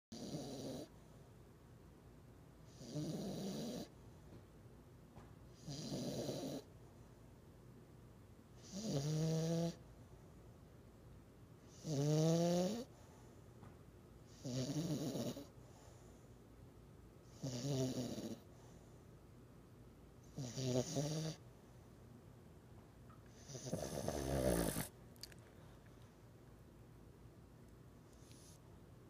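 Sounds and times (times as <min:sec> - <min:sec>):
dog snoring: 0:00.1 - 0:00.9, 0:02.7 - 0:04.0, 0:05.6 - 0:06.7, 0:08.6 - 0:09.8, 0:11.7 - 0:12.9, 0:14.3 - 0:15.6, 0:17.3 - 0:18.5, 0:20.3 - 0:21.4, 0:23.3 - 0:24.9.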